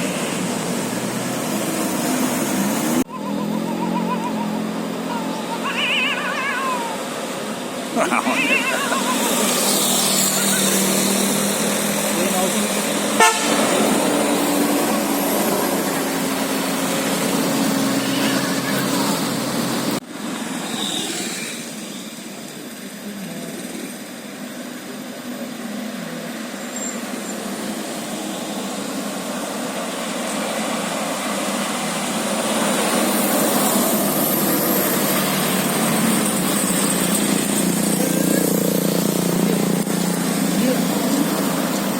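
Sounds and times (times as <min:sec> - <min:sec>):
passing vehicles: 0:00.0 - 0:41.9.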